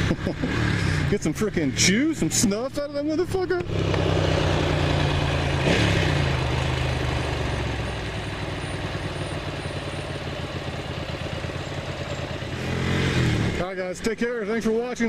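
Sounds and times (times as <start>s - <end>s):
motorcycle engine running: 0.0s - 15.0s.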